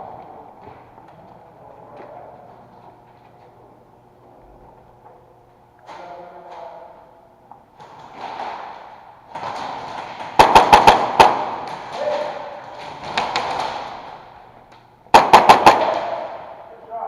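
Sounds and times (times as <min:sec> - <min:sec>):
airsoft gun burst: 0:08.2 - 0:14.2, 0:15.1 - 0:16.6.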